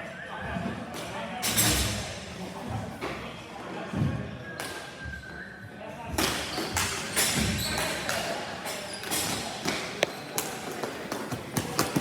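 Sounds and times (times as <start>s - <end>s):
hockey sticks and ball knocking: 9.6s - 12.0s.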